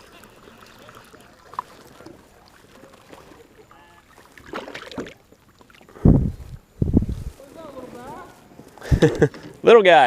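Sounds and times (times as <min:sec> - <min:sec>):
water splash: 0:00.0 - 0:06.0
water sloshing around kayak: 0:00.0 - 0:09.7.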